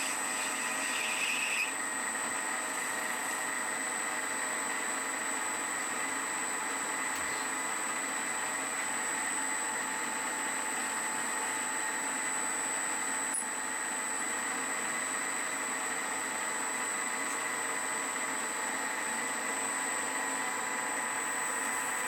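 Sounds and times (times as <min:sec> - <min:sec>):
metal lathe whining: 0:00.0 - 0:03.8.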